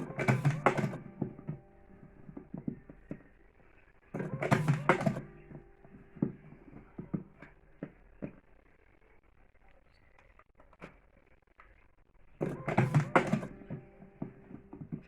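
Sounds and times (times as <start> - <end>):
machine clatter: 0.0 - 1.6, 4.2 - 5.6, 12.4 - 15.0
rolling machine clicks and knocks: 0.0 - 1.7, 4.1 - 8.4, 12.4 - 15.0.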